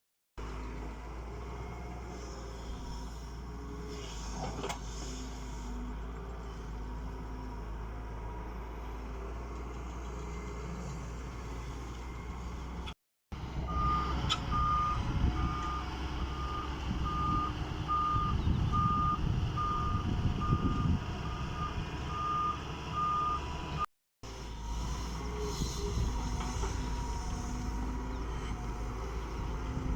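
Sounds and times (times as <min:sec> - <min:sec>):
diesel engine running: 0:00.4 - 0:29.9
reversing alarm beeps: 0:13.7 - 0:23.9.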